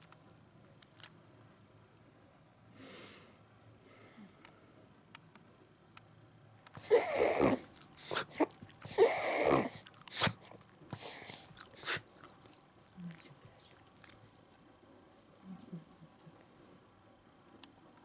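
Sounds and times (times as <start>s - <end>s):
dog snorting breaths: 6.8s - 12.6s.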